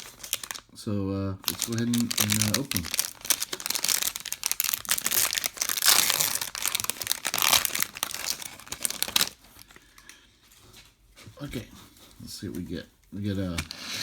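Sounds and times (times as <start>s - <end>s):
foil wrapper crinkling and tearing: 0.0s - 0.7s, 1.4s - 10.1s.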